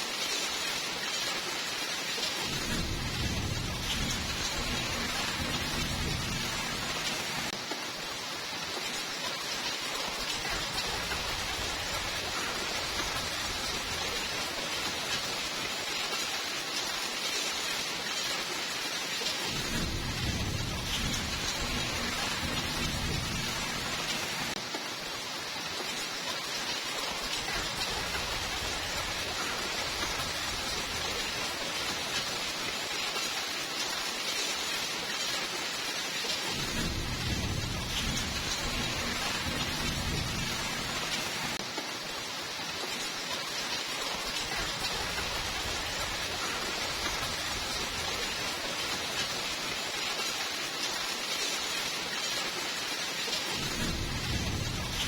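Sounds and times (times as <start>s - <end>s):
steady rainfall: 0.0s - 55.0s
thunder rumbling: 2.4s - 7.6s, 19.5s - 24.6s, 36.5s - 41.6s, 53.6s - 55.0s.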